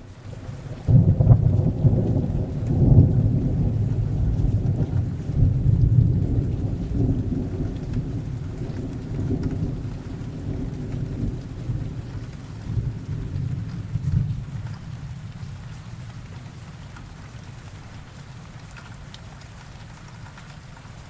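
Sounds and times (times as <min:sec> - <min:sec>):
rolling thunder rumble: 0:00.0 - 0:16.6
steady rain: 0:00.0 - 0:21.0.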